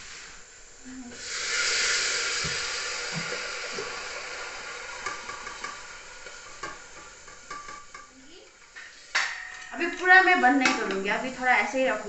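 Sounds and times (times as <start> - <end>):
food hissing in hot pan: 0.0 - 9.2
utensil knock: 2.4 - 3.4, 6.5 - 8.1.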